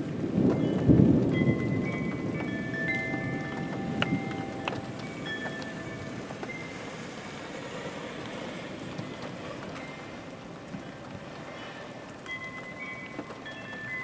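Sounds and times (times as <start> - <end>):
steady rain falling: 0.0 - 14.0
faint high ringing notes: 0.6 - 7.8, 12.2 - 14.0.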